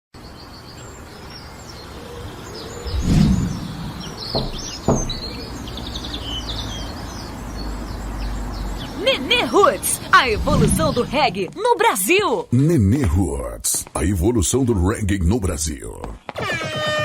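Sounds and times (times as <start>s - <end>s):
small birds chirping: 0.2s - 17.0s
low rumble: 2.8s - 4.5s, 10.2s - 11.6s
dull thump: 2.9s - 5.4s.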